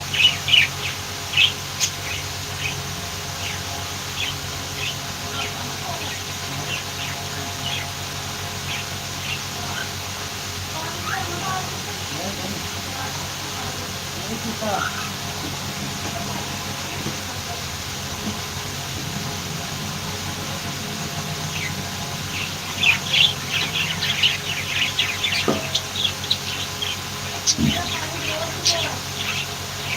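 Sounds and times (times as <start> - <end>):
budgerigars chirping: 0.0 - 10.0, 10.8 - 17.6, 20.0 - 29.9
steady low hum: 0.0 - 29.9.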